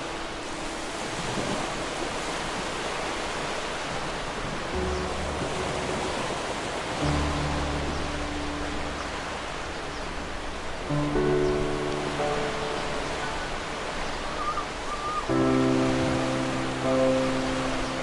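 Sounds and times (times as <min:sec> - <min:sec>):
sea surf rushing: 0:00.0 - 0:18.0
background music: 0:04.8 - 0:18.0
sustained low notes: 0:07.0 - 0:14.1.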